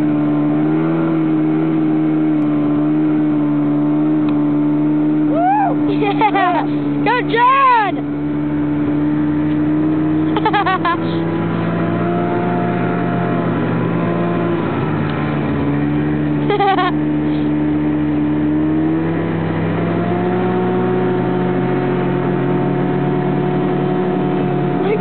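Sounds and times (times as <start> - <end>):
snowmobile engine running: 0.0 - 25.0
person shouting: 5.3 - 5.9.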